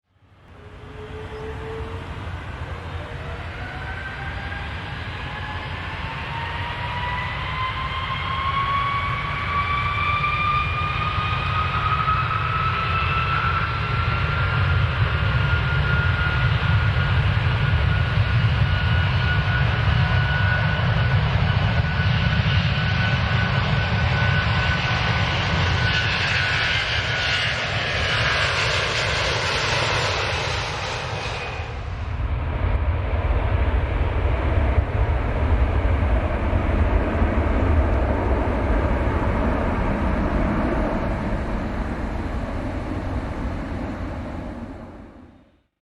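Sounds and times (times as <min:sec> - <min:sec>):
jet engine whine rising: 0:00.2 - 0:45.7
low engine rumble: 0:29.8 - 0:45.4.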